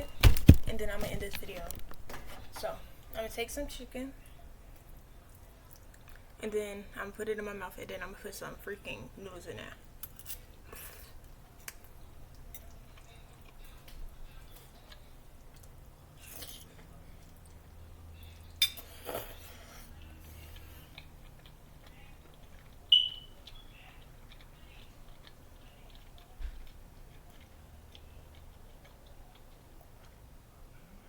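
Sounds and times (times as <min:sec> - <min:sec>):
person chewing food: 0:10.5 - 0:30.9.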